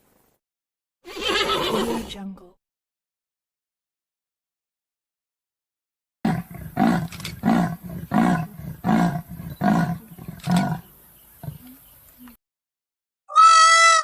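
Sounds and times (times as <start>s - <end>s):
animal deep calls: 6.3s - 11.8s.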